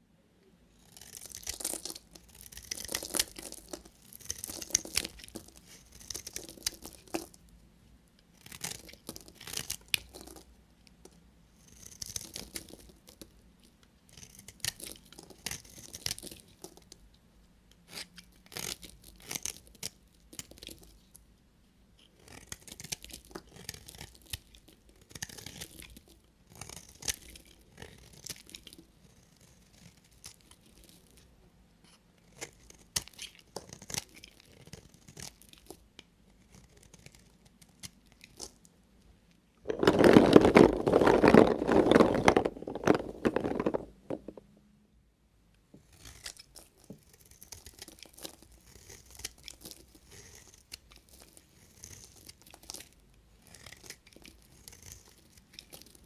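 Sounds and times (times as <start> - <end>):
knife cutting through soap: 0.8 - 7.3, 17.9 - 20.9, 22.2 - 30.9, 31.9 - 35.7, 45.8 - 56.0.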